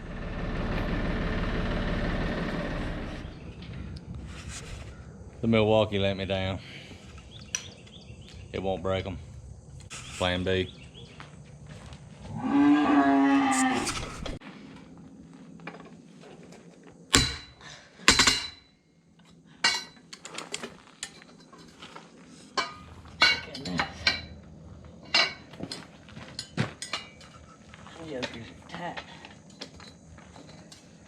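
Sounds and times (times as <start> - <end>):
cow mooing: 12.3 - 13.9
hand tools clinking on metal: 19.2 - 21.9, 22.5 - 24.4, 25.0 - 27.5.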